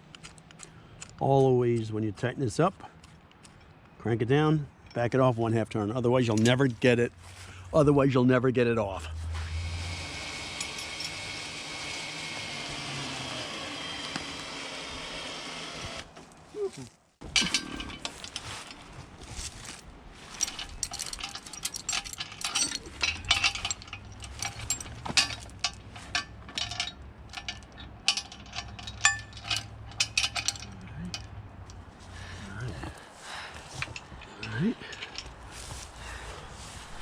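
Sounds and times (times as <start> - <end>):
low steady hum: 16.6 - 37.0
metallic chain clinks: 19.6 - 31.8.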